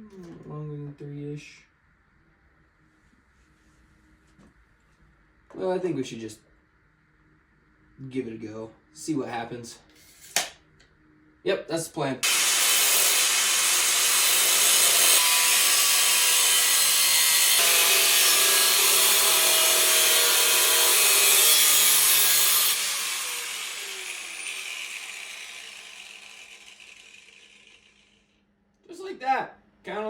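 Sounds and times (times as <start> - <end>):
power tool grinding: 12.2 - 28.3.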